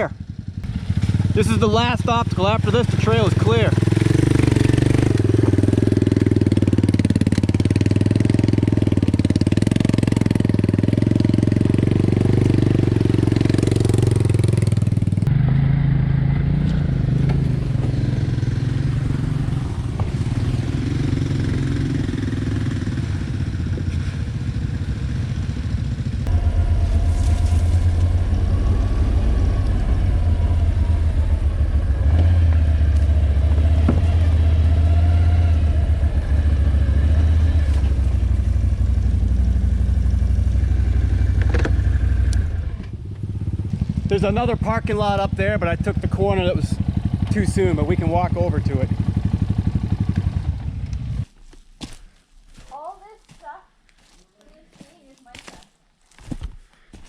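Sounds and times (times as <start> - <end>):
quad bike engine running: 0.0 - 51.3.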